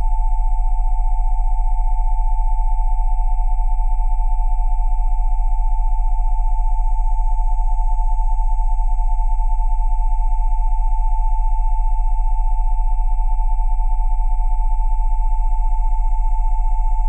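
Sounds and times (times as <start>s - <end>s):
pulsing sine tones: 0.0s - 17.0s.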